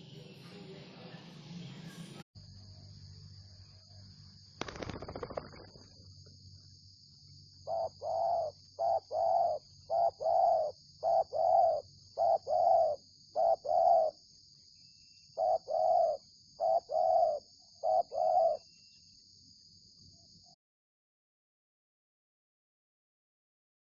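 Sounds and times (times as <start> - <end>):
dove cooing: 7.6 - 14.2, 15.4 - 18.7.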